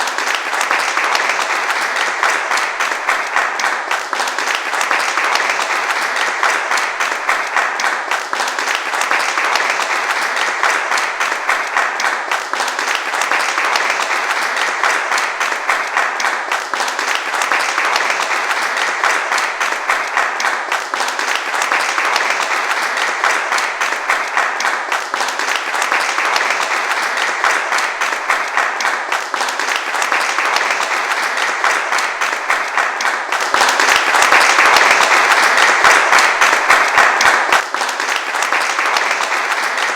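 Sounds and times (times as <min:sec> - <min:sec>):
large crowd applauding: 0:00.0 - 0:39.9.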